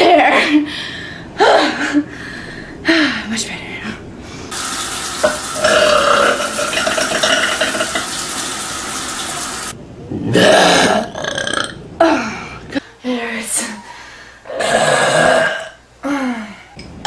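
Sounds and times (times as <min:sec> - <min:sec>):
woman burping: 0:05.6 - 0:07.9, 0:14.5 - 0:15.8.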